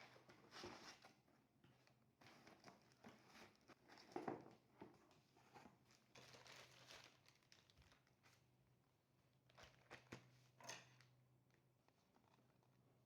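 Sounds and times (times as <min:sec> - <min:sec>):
packaging rustling and crinkling: 0:06.2 - 0:08.1.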